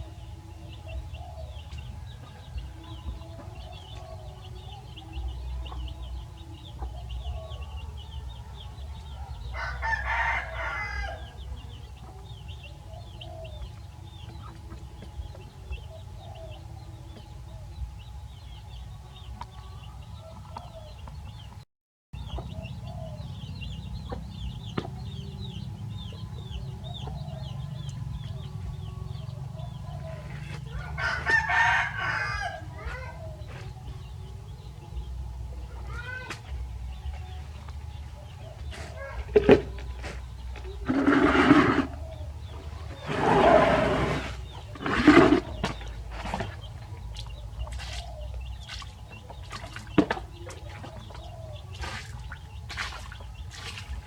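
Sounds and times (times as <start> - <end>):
rooster crowing: 9.1 - 11.5, 30.0 - 33.1.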